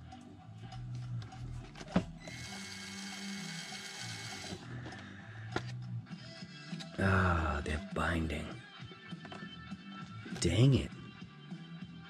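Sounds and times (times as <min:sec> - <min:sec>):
small electric motor and gears: 0:02.2 - 0:04.7.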